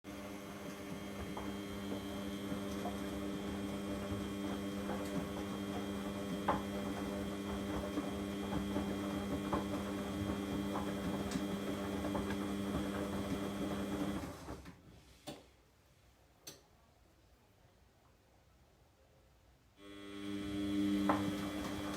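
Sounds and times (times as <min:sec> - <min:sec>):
mechanical hum: 0:19.8 - 0:21.9.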